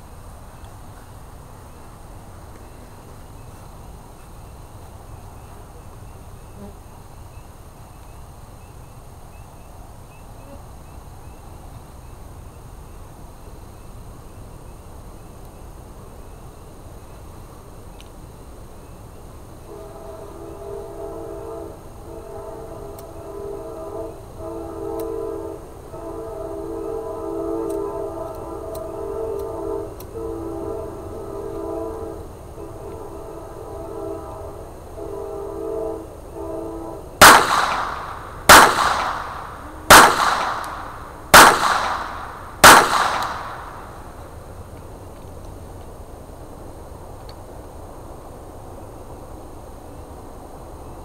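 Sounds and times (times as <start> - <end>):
distant train horn blasts: 19.6 - 41.4
pistol shots with echo: 37.2 - 44.0.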